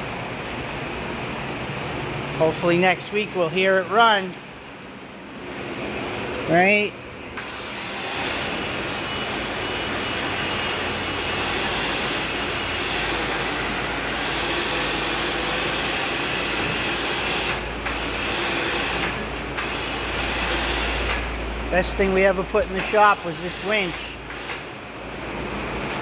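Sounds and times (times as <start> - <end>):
electric winch running under load: 7.3 - 25.8.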